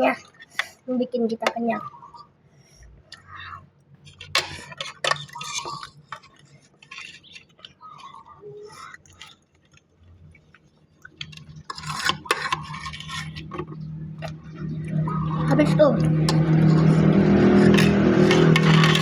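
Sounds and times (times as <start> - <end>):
fork scraping and clinking on plate: 11.3 - 14.4, 16.1 - 19.0.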